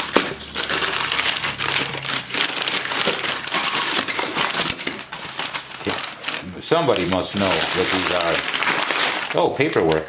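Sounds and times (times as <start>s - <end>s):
paper bag crumpling: 0.0s - 10.0s.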